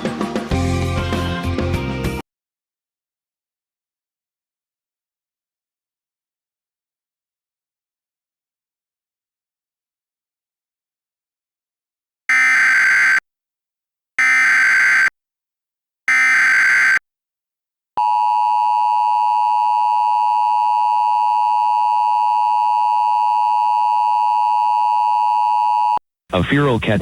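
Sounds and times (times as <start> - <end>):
screechy digital data tones: 12.3 - 13.2, 14.2 - 15.1, 16.1 - 17.0.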